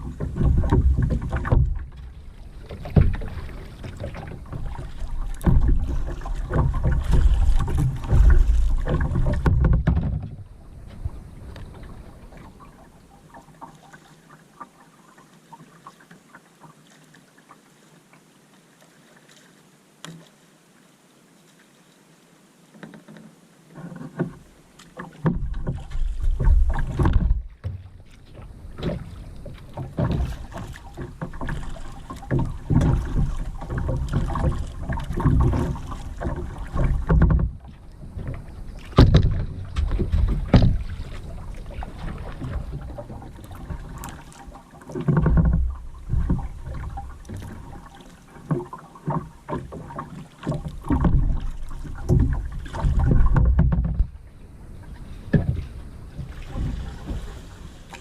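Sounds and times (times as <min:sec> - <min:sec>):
low rumbling and splashing: 0:00.0 - 0:14.2, 0:23.8 - 0:58.0
paddle in water: 0:00.0 - 0:58.0.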